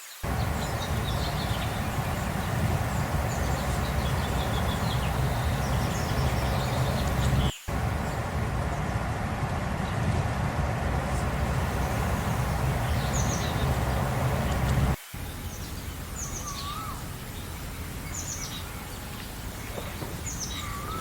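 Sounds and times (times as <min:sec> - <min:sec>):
steady low rumble: 0:00.2 - 0:15.5
birds chirping: 0:00.2 - 0:21.0.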